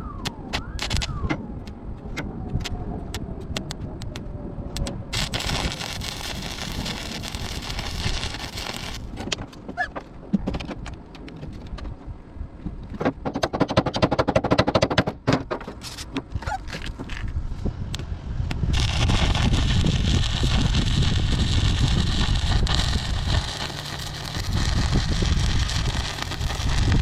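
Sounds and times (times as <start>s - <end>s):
sharp clicks: 0.2s - 5.3s
welding arc crackling: 0.8s - 1.2s, 5.1s - 9.2s, 18.7s - 27.0s.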